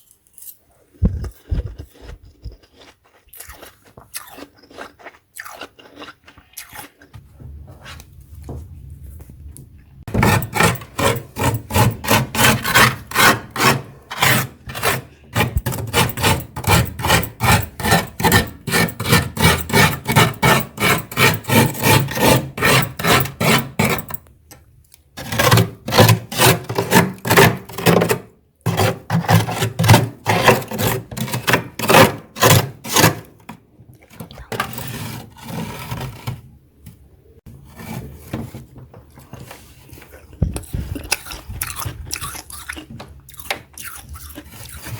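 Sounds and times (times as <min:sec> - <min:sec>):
frost scraped off freezer walls: 0:10.1 - 0:24.2, 0:25.2 - 0:36.5, 0:37.5 - 0:42.4, 0:44.2 - 0:44.9.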